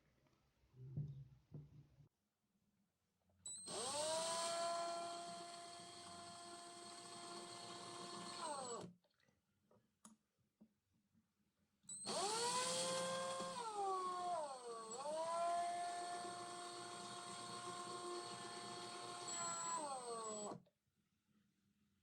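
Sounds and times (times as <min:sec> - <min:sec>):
power tool motor whining: 0:03.7 - 0:06.1, 0:12.1 - 0:20.6.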